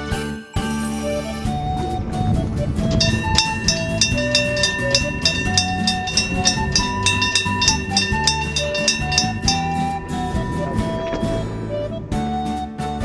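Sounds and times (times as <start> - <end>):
background music: 0.0 - 13.0
level-crossing bell ringing: 3.0 - 12.3.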